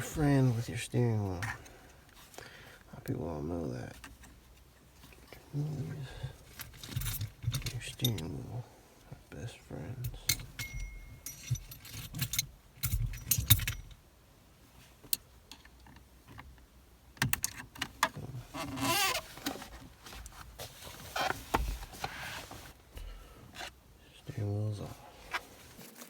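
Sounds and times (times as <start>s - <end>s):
metal clicks clinks and rattles: 10.2s - 14.0s.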